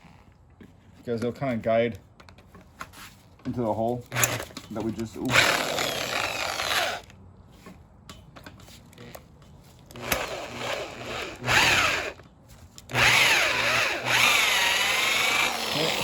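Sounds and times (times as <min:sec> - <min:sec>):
hand drill whining into steel: 0:04.1 - 0:04.6, 0:05.2 - 0:07.1, 0:09.9 - 0:12.2, 0:12.9 - 0:16.0.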